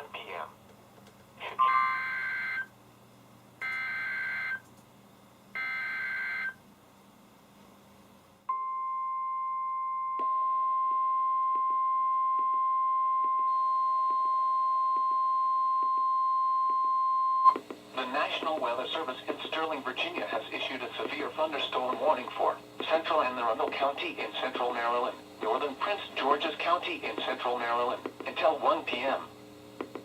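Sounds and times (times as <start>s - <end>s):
steady warning alarm tone: 3.6s - 4.6s, 5.6s - 6.6s.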